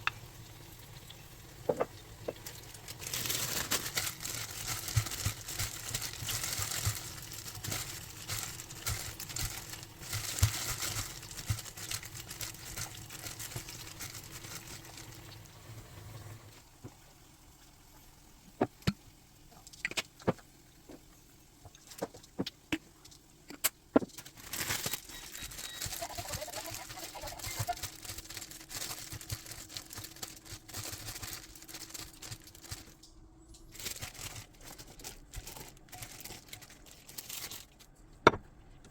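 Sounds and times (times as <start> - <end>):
packaging rustling and crinkling: 1.7 - 15.4, 24.0 - 38.0.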